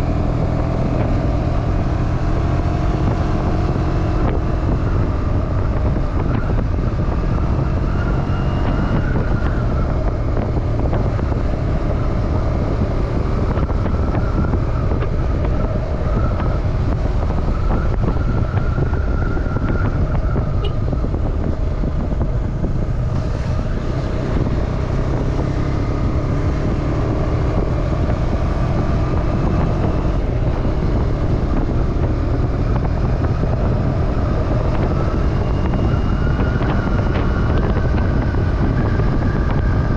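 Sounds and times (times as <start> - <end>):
motorcycle engine running: 0.0 - 39.9
wind buffeting microphone: 0.0 - 39.9.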